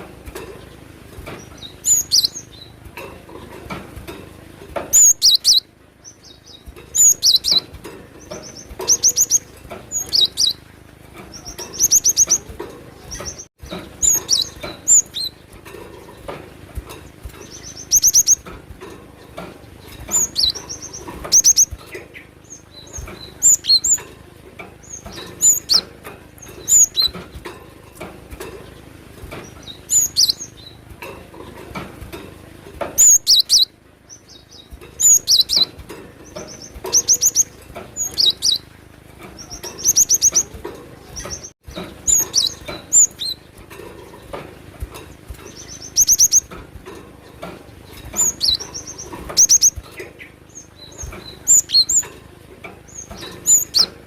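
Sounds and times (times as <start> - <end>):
bird singing high phrases: 0.6 - 2.8, 4.9 - 10.7, 11.3 - 15.6, 17.4 - 18.5, 19.6 - 24.0, 24.8 - 27.4, 28.6 - 30.8, 33.0 - 38.7, 39.4 - 43.6, 45.4 - 46.6, 47.7 - 52.1, 52.9 - 54.0.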